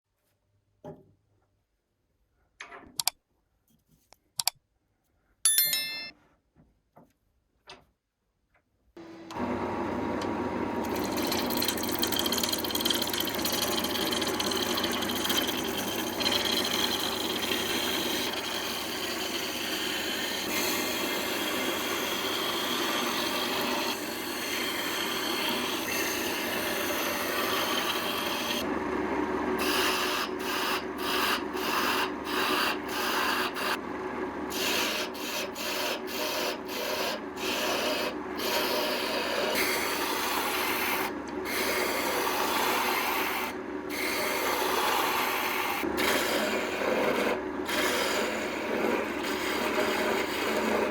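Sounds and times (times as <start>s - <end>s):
short ringing tone: 5.5s - 6.1s
wood lathe running: 9.0s - 50.9s
tool rubbing spinning wood: 9.4s - 28.7s, 29.5s - 33.8s, 34.5s - 50.9s.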